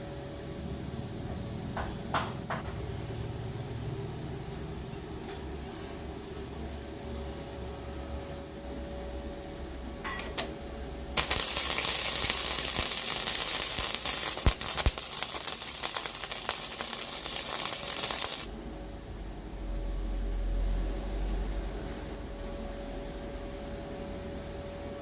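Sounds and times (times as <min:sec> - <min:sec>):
welding machine hum: 0:10.2 - 0:18.5
welding arc crackling hiss: 0:11.2 - 0:18.5.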